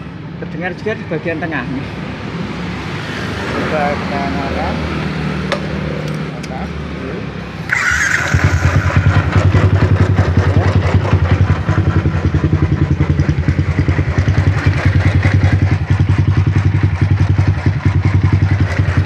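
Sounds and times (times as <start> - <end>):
motorcycle engine idling: 7.7 - 19.0.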